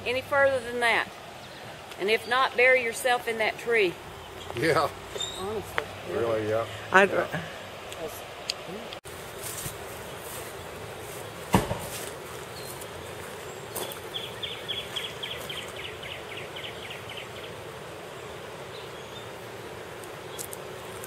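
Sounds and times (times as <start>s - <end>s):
outdoor background noise: 0.0s - 21.0s
sharp thump: 11.5s - 12.0s.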